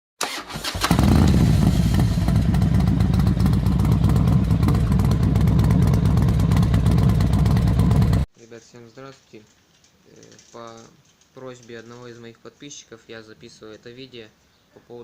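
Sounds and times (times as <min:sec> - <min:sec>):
motorcycle engine running: 0:00.9 - 0:08.3.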